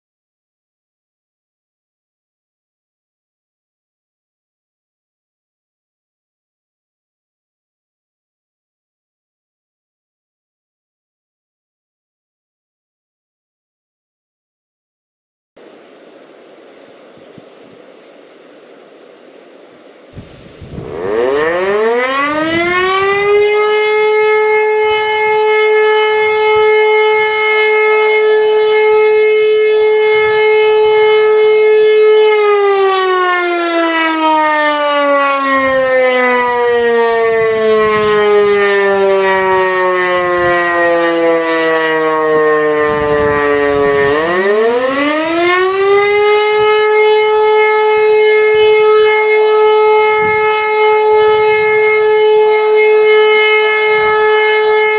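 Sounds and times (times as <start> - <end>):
electro-mechanical siren howling: 20.1 - 54.9.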